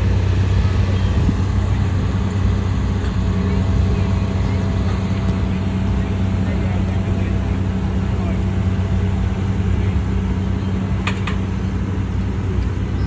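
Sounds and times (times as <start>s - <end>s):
farm machinery engines humming: 0.0s - 13.0s.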